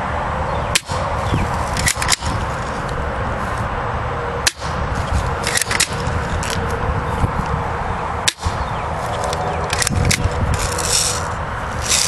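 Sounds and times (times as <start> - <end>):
airsoft rifle snapping shots: 8.3 - 8.6.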